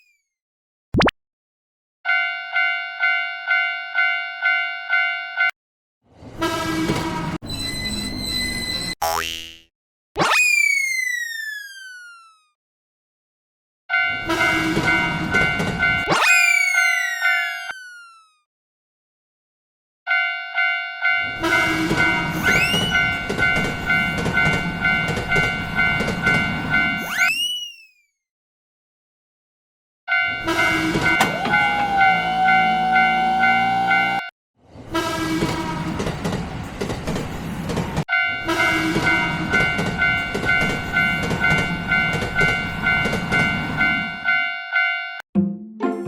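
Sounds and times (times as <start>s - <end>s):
railroad crossing bell ringing: 2.1s - 5.6s, 13.9s - 16.1s, 16.8s - 17.8s, 20.1s - 27.1s, 30.1s - 34.3s, 38.1s - 45.2s
passing train rumble: 6.1s - 7.5s, 21.3s - 27.0s, 30.4s - 44.3s
train horn blast: 6.4s - 7.4s, 13.9s - 15.7s, 20.1s - 25.2s, 30.3s - 34.3s, 34.9s - 36.1s, 38.3s - 40.3s.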